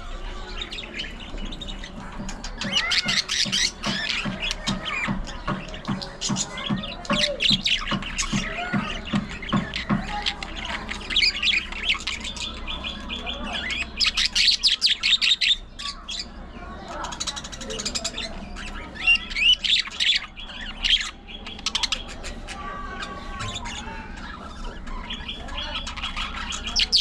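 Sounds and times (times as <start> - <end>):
budgerigars chattering: 0.1 - 27.0.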